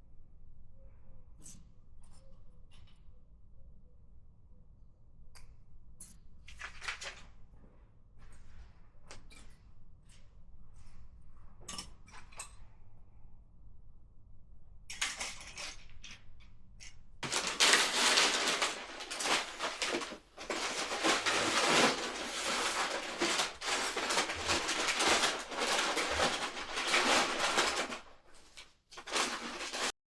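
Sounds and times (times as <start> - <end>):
handling clicks and clatters: 16.9 - 30.0.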